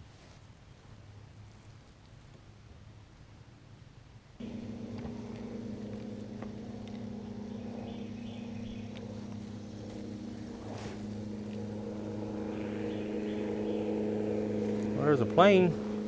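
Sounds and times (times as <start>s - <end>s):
boat motor running: 4.4s - 16.0s.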